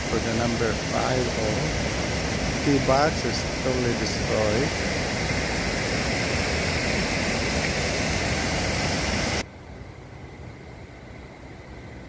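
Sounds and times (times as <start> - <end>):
floodwater rushing: 0.0 - 9.4.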